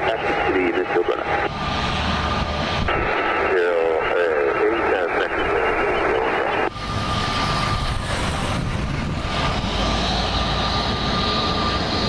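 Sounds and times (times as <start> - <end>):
radio hiss: 0.0 - 1.5, 2.9 - 6.7
jet engines rumbling and whining: 0.0 - 12.0.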